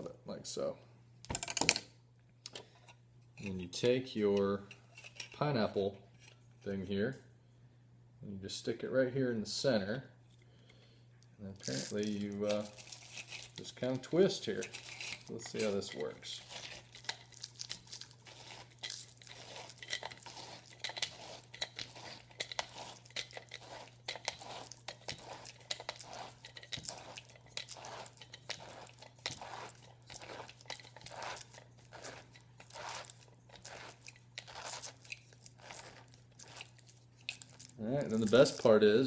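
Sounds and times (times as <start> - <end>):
pineapple slicer crunching fruit: 11.6 - 39.0.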